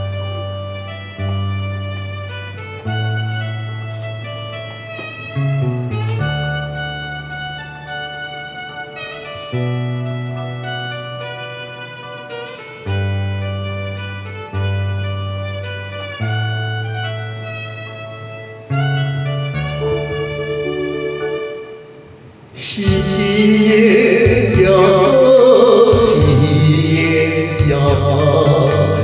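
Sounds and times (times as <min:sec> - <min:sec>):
bass line: 0:00.0 - 0:22.0, 0:22.7 - 0:29.0
harmonica-like melody: 0:00.0 - 0:29.0
plucked guitar: 0:00.0 - 0:29.0.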